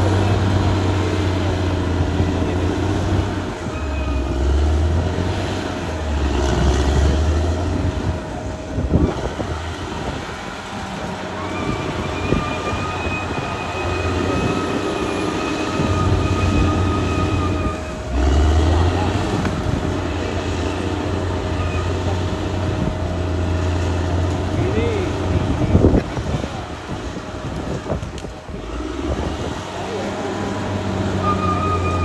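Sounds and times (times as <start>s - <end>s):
bulldozer diesel engine: 0.0s - 32.0s
high whine: 5.0s - 23.3s.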